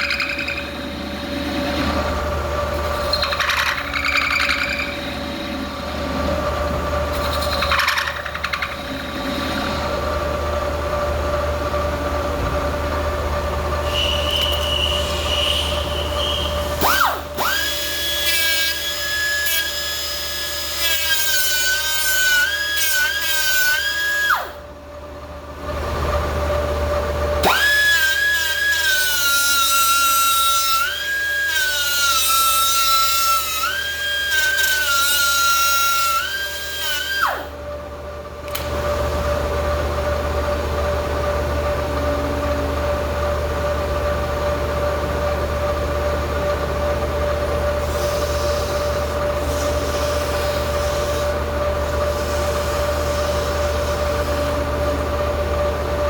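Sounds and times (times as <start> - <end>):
lathe motor hum: 0.0 - 19.3
high wavering cutting whine: 0.0 - 20.3.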